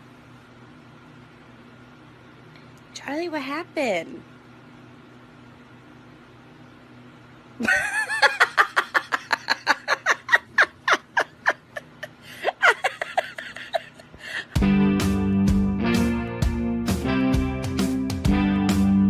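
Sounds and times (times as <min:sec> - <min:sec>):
person laughing hard: 0:07.6 - 0:14.6.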